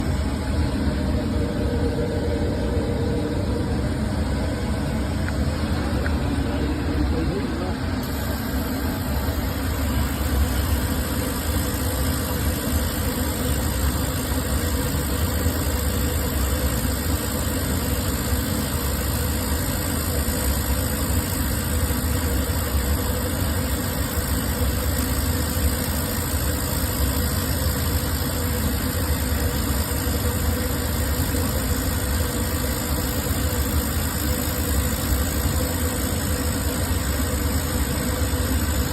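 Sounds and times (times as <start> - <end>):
industrial machinery humming: 0.0 - 38.9.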